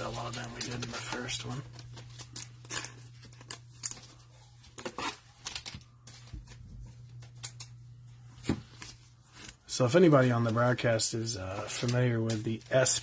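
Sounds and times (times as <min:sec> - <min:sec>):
plastic wrapping rustling: 0:00.0 - 0:07.4
low steady hum: 0:00.0 - 0:13.0.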